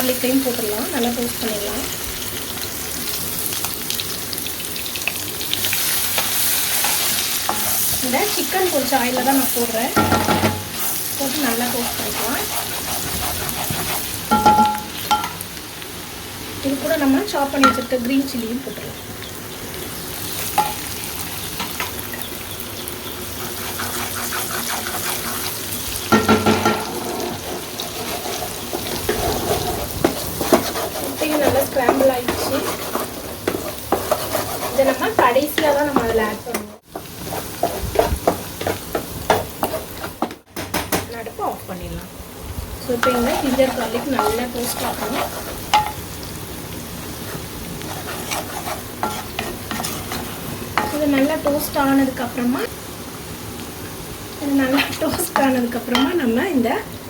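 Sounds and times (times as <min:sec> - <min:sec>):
food sizzling in hot oil: 0:00.0 - 0:57.0
spatula tapping and scraping: 0:06.1 - 0:15.4, 0:21.5 - 0:41.1, 0:42.9 - 0:46.0, 0:47.2 - 0:51.8, 0:54.8 - 0:56.4.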